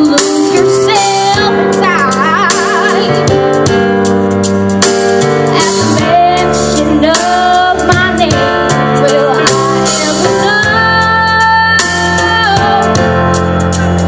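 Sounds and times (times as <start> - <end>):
young girl singing: 0.0 - 3.2, 5.6 - 12.9
instrumental accompaniment: 0.0 - 14.0.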